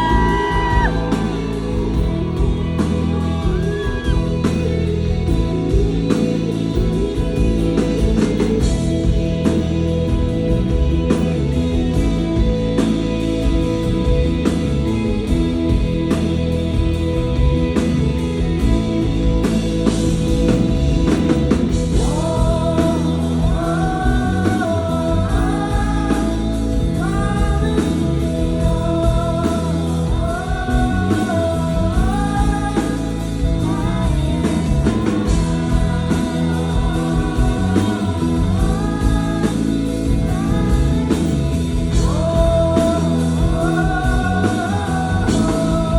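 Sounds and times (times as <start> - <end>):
live rock band playing: 0.0 - 45.9
person singing: 0.0 - 45.9.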